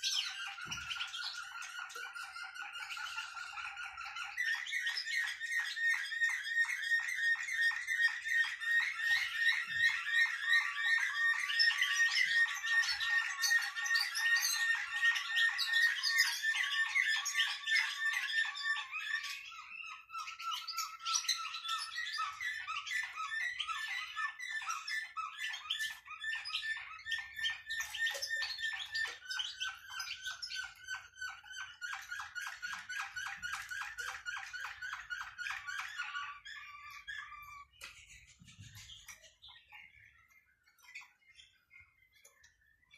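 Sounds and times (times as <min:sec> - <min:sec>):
songbird whistling trill: 0:00.0 - 0:42.9.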